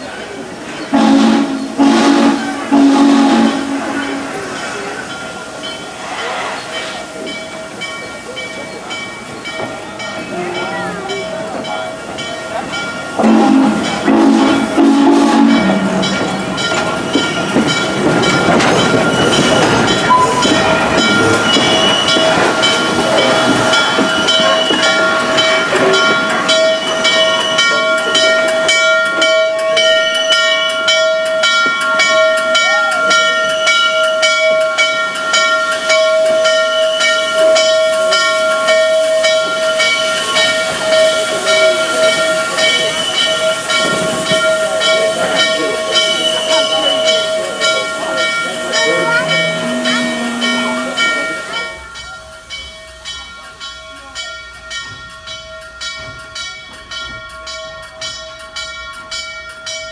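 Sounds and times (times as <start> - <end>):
steam locomotive hissing: 0.0 - 59.9
low chime whistle: 18.8 - 22.8, 45.9 - 53.2.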